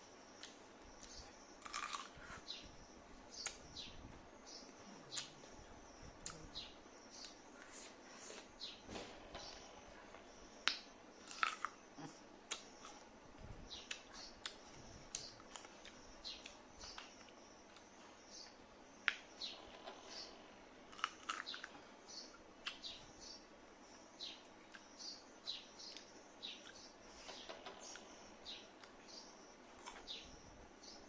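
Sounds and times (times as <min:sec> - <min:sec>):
small animal crunching food: 0:01.6 - 0:02.4, 0:11.2 - 0:11.8, 0:20.9 - 0:21.8.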